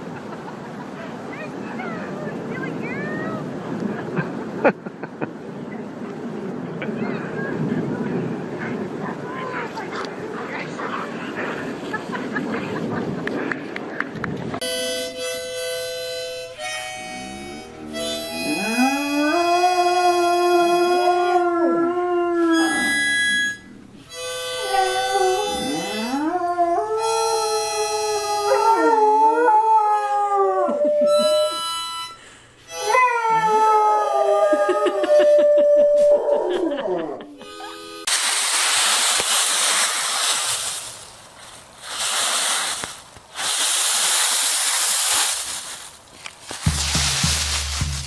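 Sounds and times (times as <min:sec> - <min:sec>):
harmonica playing chords: 0:14.6 - 0:19.3, 0:22.5 - 0:26.3, 0:27.0 - 0:28.7, 0:31.1 - 0:33.3, 0:37.4 - 0:38.2
dog howling: 0:18.0 - 0:23.2, 0:24.5 - 0:31.6, 0:32.8 - 0:37.3.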